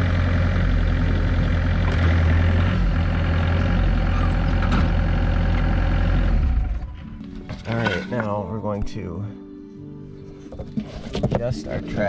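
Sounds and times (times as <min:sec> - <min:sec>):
excavator diesel engine running: 0:00.0 - 0:07.6.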